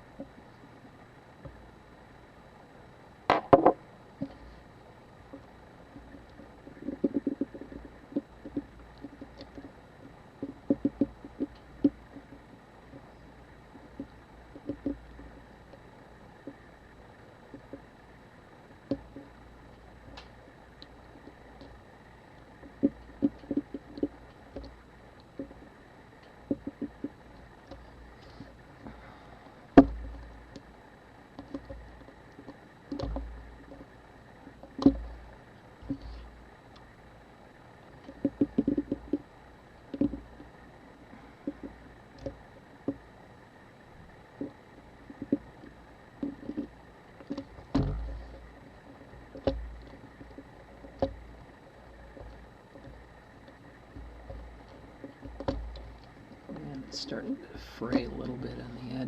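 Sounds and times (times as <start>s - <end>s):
dull thuds: 47.4s - 48.4s.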